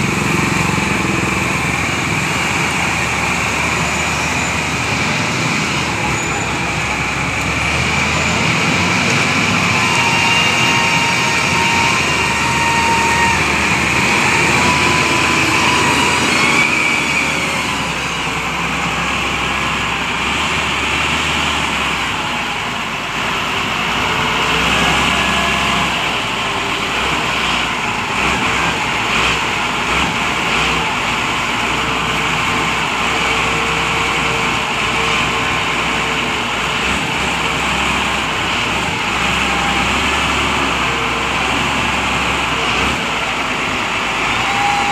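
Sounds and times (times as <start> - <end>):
vehicle engine running: 0.0 - 44.9.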